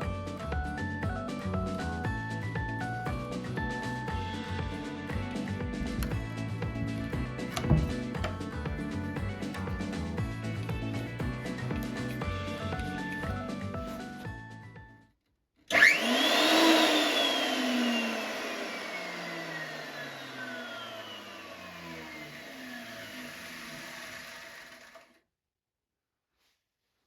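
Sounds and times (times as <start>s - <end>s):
background music: 0.0s - 15.0s
jointer motor whine: 15.7s - 25.2s.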